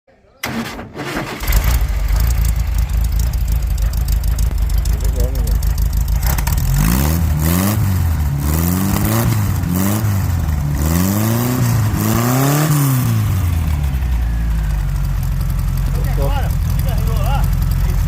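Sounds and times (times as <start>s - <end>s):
dune buggy engine revving: 0.4s - 18.0s.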